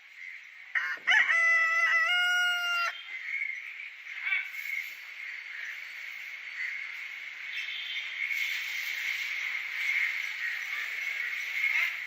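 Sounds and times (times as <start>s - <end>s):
rooster crowing: 0.7s - 3.0s
chicken call: 0.8s - 2.9s.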